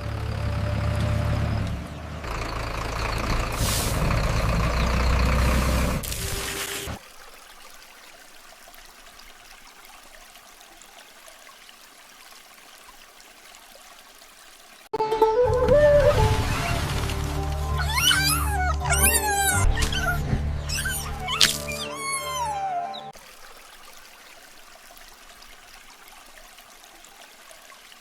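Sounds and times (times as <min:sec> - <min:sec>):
truck engine rumbling: 0:00.0 - 0:07.0, 0:15.0 - 0:23.0
air brake hiss: 0:03.5 - 0:04.1.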